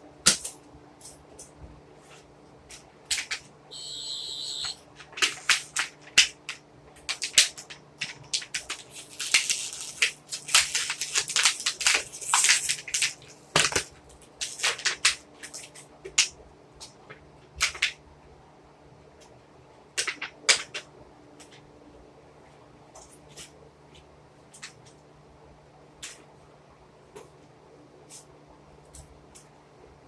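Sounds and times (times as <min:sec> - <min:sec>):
high electronic buzz: 0:03.7 - 0:04.8
plastic packaging crinkling: 0:07.0 - 0:15.8.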